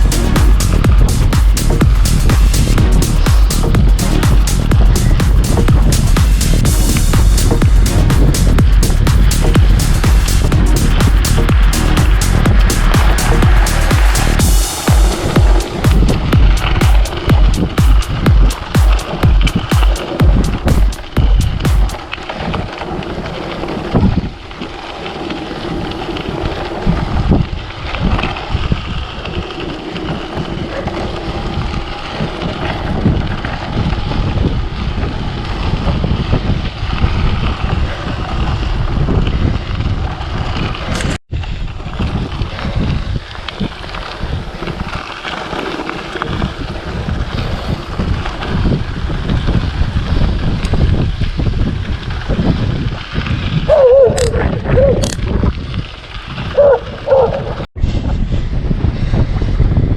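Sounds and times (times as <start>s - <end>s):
gusty wind buffeting microphone: 0.0s - 59.9s.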